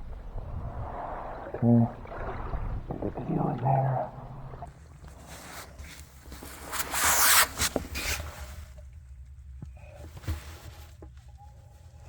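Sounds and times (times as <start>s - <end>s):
water sloshing: 0.0s - 6.8s
water swishing: 0.0s - 7.2s.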